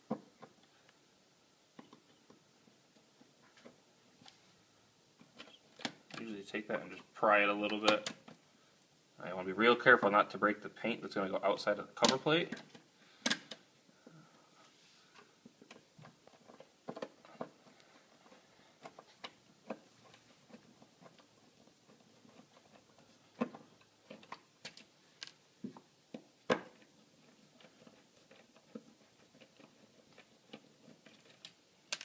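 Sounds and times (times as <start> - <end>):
screwdriver clicking and scraping plastic: 26.7 - 32.0.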